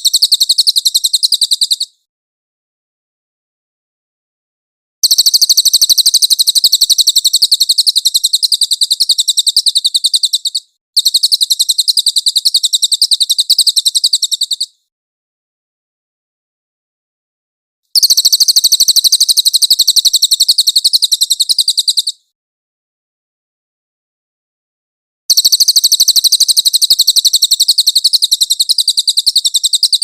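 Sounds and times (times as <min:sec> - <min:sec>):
bird singing rapid trills: 0:00.0 - 0:02.0, 0:05.0 - 0:14.8, 0:18.0 - 0:22.3, 0:25.3 - 0:30.0.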